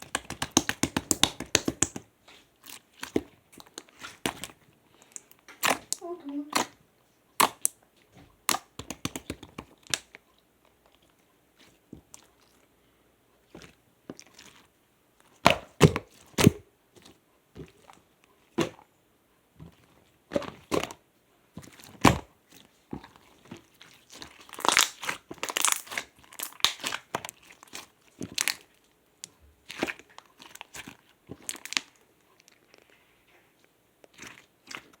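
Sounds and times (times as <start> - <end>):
slime squeezed with sticky pops: 0.0 - 6.8, 7.4 - 7.8, 8.4 - 10.2, 22.9 - 32.9.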